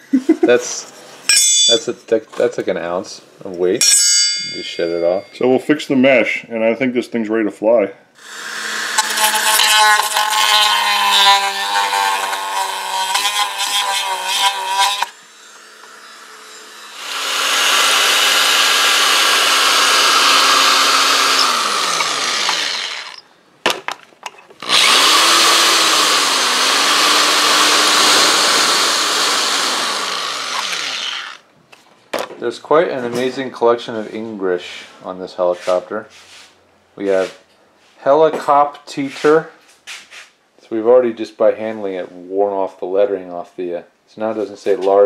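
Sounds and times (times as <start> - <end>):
rotary tool grinding: 8.2 - 23.2, 24.5 - 31.4.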